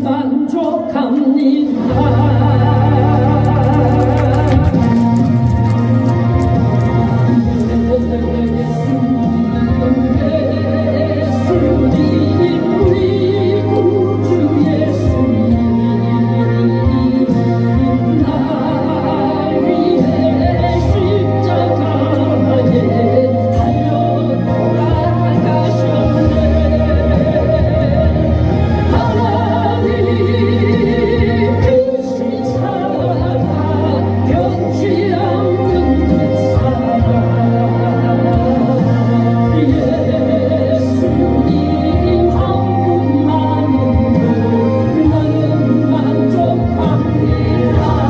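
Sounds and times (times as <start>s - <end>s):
instrumental accompaniment with bass: 0.0s - 48.0s
person singing: 0.0s - 48.0s.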